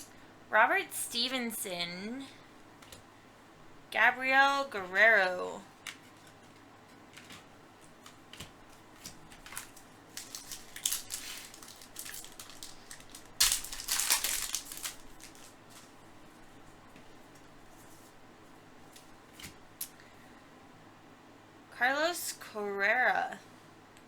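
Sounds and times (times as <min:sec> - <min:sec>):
card pack crinkling: 0:05.8 - 0:16.0
cards clicking and rustling: 0:05.8 - 0:16.0.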